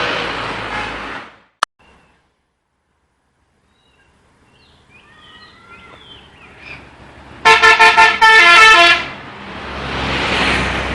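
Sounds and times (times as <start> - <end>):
musical vehicle horn tune: 7.4 - 9.1.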